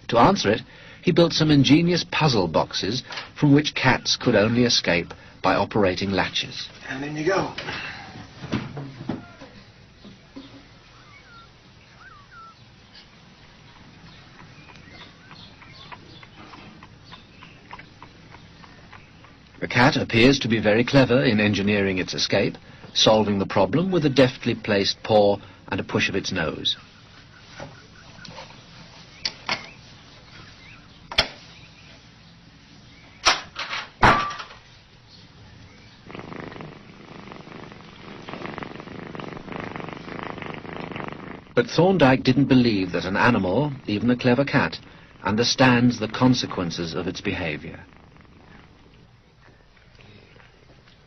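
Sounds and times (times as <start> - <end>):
cat purring: 9.2 - 29.1, 35.2 - 51.0
cat chirping: 10.6 - 19.7, 35.5 - 41.6, 47.4 - 49.0.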